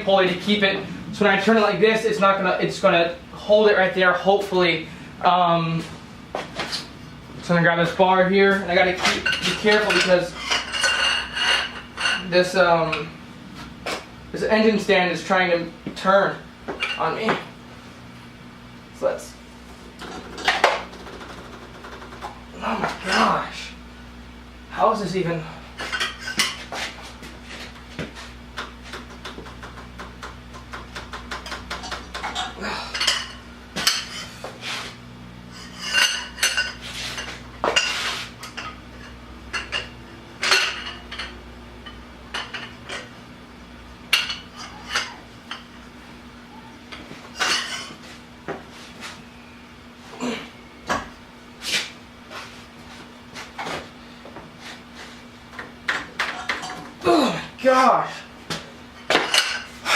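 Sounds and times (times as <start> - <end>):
faint steady hum: 0.0 - 59.9
steel tools clanking: 8.9 - 13.1, 31.8 - 34.4, 35.5 - 43.1.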